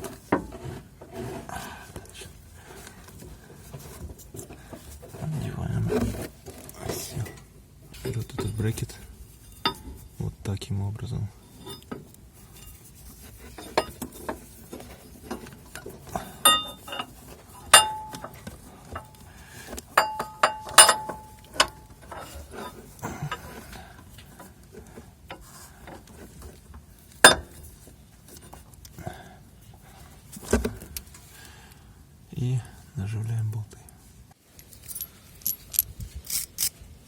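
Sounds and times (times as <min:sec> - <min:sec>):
metal parts clinking: 0:16.4 - 0:18.4, 0:20.0 - 0:22.8, 0:34.5 - 0:36.8.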